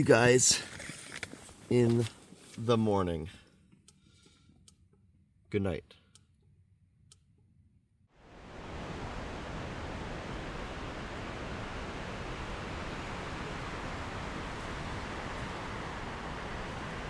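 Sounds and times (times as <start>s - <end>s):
steady rushing noise: 8.3s - 17.0s.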